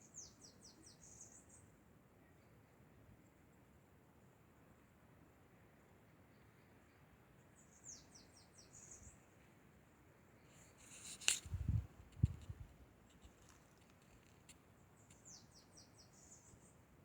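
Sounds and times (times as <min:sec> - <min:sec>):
small bird singing: 0:00.0 - 0:01.7, 0:07.6 - 0:09.3, 0:10.6 - 0:16.9
sharp click: 0:10.9 - 0:13.3.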